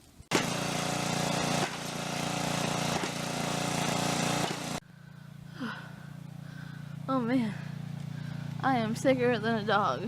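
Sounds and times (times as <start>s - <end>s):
small gasoline engine running: 0.3s - 4.8s.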